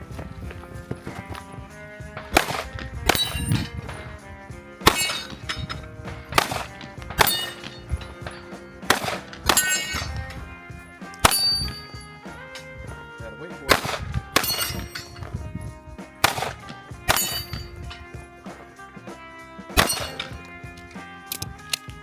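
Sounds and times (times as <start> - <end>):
gunshots: 0.0 - 18.7, 19.7 - 21.7
steel target ringing clang: 1.2 - 10.5, 11.1 - 12.8, 13.7 - 15.4, 16.2 - 18.2, 19.8 - 20.5.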